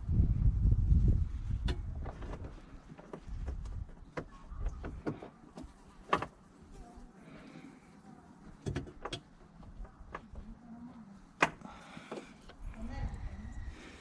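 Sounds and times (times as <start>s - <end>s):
clicks and knocks of plastic fittings: 8.6s - 10.2s.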